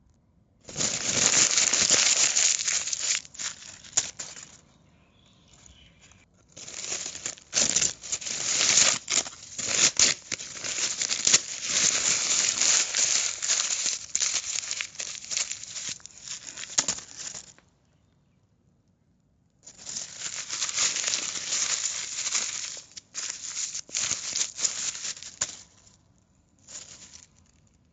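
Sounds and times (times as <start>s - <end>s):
paper being crumpled: 0.7s - 4.6s, 6.5s - 17.6s, 19.7s - 25.8s, 26.6s - 27.5s.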